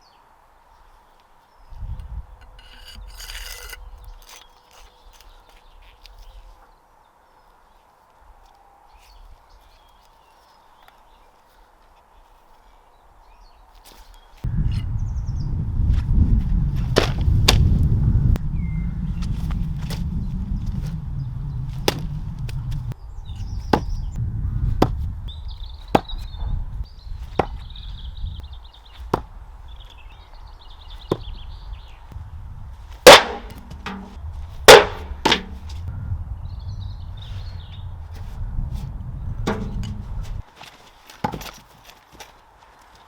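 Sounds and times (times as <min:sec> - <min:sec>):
dagger striking wooden target: 0:33.0 - 0:35.8, 0:39.5 - 0:40.1.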